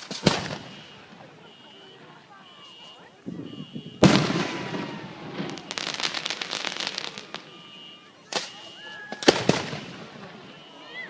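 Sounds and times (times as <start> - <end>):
fireworks crackling pops: 0.0 - 1.3, 4.0 - 10.7
fireworks bangs: 0.0 - 11.0.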